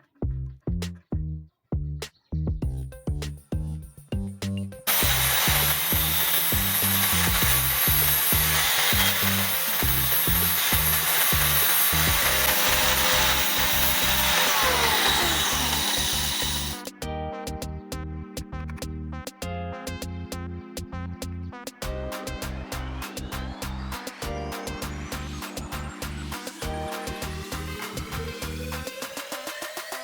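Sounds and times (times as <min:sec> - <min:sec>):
music with bass beat: 0:00.0 - 0:30.0
power tool running under load: 0:04.9 - 0:16.8.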